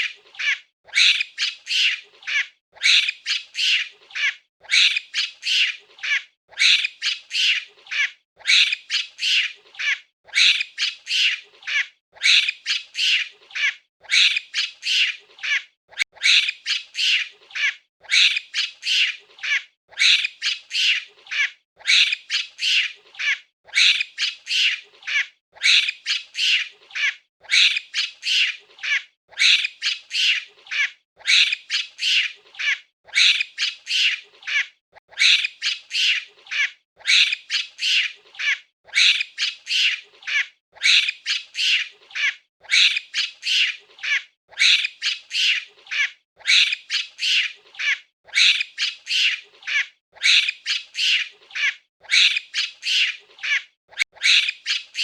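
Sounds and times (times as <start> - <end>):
monkey squawking calls: 0.0 - 55.0.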